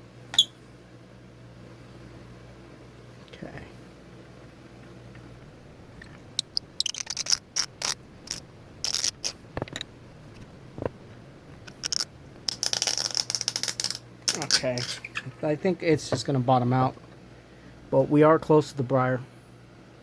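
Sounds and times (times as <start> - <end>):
reamer scraping pipe bowl: 6.0 - 15.2.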